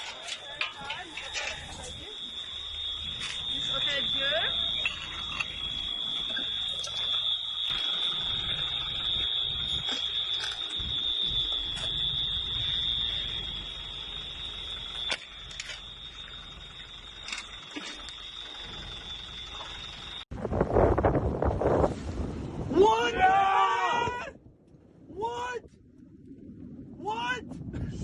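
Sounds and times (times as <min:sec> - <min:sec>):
electronic alarm steady high tone: 0:00.0 - 0:20.3
low rumble: 0:00.8 - 0:22.8.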